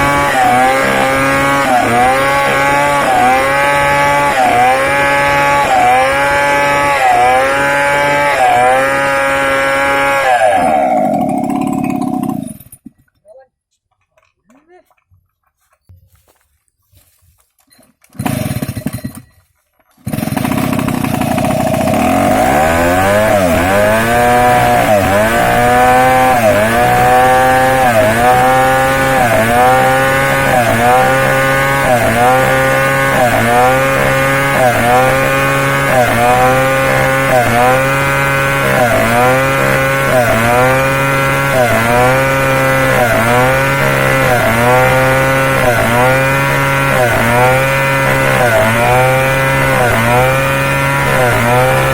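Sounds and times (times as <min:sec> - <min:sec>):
chainsaw sawing wood: 0:00.0 - 0:12.9, 0:18.0 - 0:19.3, 0:19.9 - 0:51.9.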